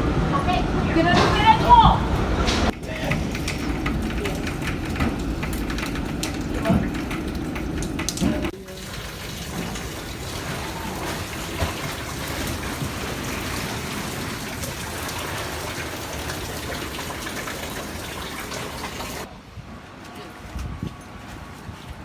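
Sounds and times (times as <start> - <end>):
hurricane wind: 0.0 - 22.0
heavy rain: 2.7 - 19.3
wind buffeting microphone: 20.5 - 22.0.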